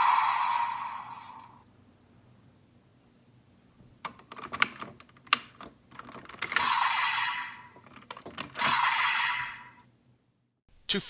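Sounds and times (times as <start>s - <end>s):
plastic toy clicks and snaps: 4.1s - 5.6s.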